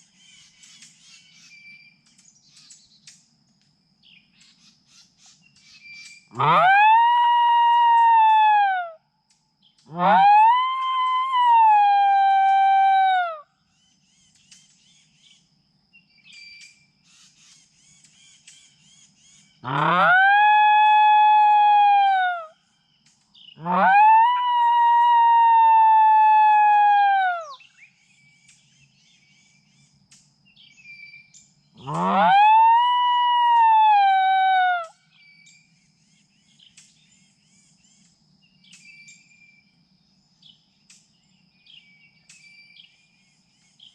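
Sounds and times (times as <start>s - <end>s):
fawn distress bleats from caller: 6.4s - 6.7s.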